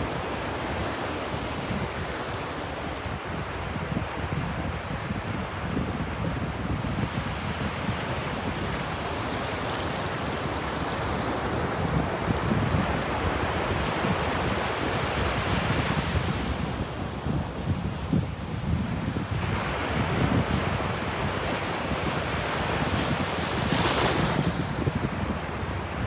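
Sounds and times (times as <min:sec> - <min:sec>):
ocean waves washing on a beach: 0:00.0 - 0:26.0.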